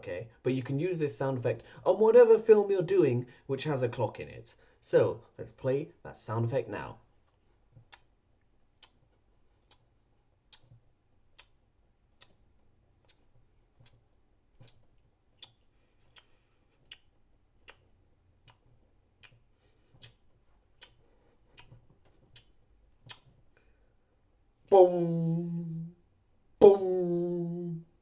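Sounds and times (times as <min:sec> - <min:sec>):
mouth clicks imitating clock ticks: 0:10.5 - 0:12.4, 0:14.6 - 0:23.3.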